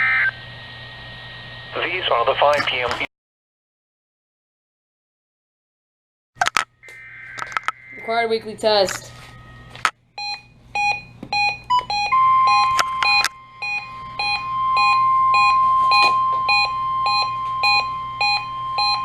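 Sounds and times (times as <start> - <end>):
steady warning alarm tone: 6.8 - 19.0.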